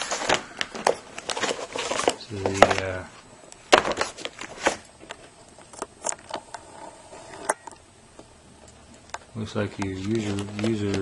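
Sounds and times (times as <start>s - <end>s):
cardboard and paper rustling: 0.0s - 3.1s, 3.7s - 6.4s, 9.6s - 11.0s.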